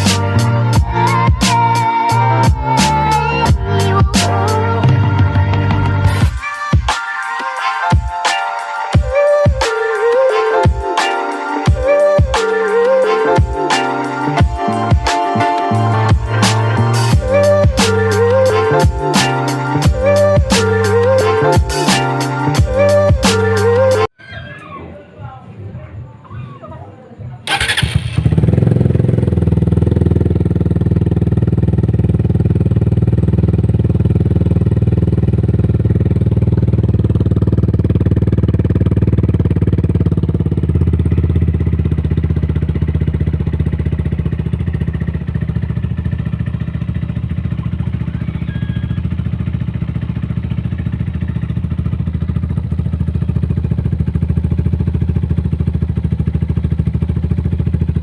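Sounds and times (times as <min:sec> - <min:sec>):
motorcycle engine starting and idling: 0:27.4 - 0:58.0.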